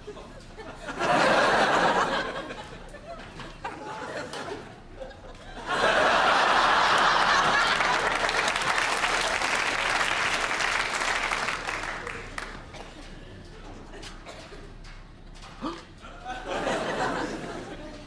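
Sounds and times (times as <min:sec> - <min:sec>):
studio audience laughing: 0:00.1 - 0:12.6, 0:16.1 - 0:18.0
audience applause: 0:05.7 - 0:12.8.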